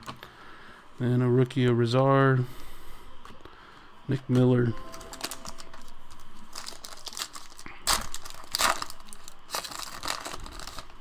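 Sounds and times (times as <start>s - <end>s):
foil wrapper crinkling and tearing: 5.2s - 11.0s.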